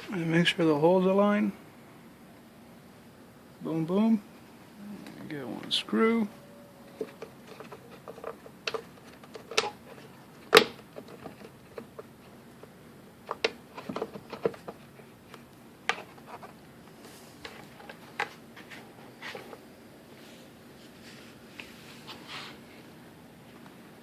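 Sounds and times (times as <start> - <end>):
clicks and knocks of hard plastic: 7.0 - 16.4.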